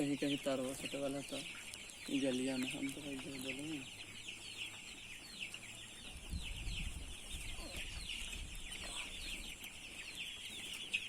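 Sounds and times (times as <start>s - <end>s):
flock of chickens calling: 0.0s - 11.0s.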